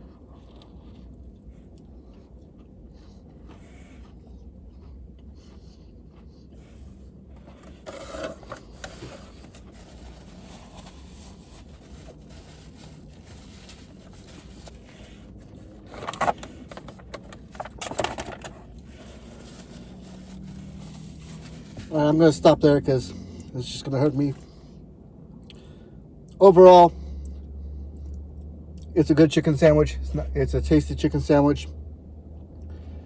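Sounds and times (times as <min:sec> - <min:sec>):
mouth and handling noise: 0:00.0 - 0:22.3
low hum: 0:24.3 - 0:33.0.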